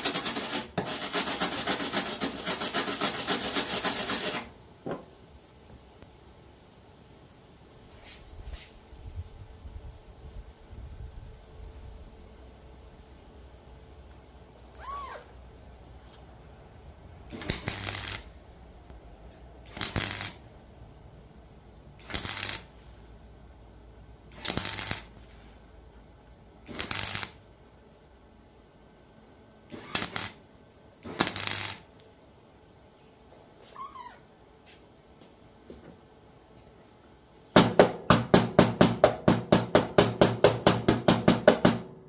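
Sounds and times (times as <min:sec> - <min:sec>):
crackling welding arc: 0:00.0 - 0:04.5, 0:17.3 - 0:18.4, 0:19.6 - 0:20.5, 0:22.0 - 0:22.8, 0:24.3 - 0:25.2, 0:26.6 - 0:27.4, 0:29.7 - 0:30.4, 0:31.0 - 0:32.0
welder hum: 0:17.3 - 0:18.4, 0:19.6 - 0:20.5, 0:22.0 - 0:22.8, 0:24.3 - 0:25.2, 0:26.7 - 0:27.4, 0:29.7 - 0:30.4, 0:31.1 - 0:32.0.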